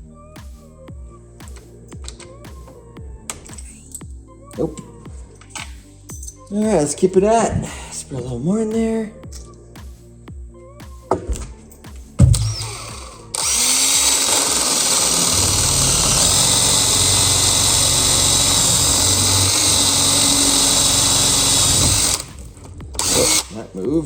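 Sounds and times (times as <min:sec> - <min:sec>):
electric drill boring into metal: 0:12.2 - 0:23.6.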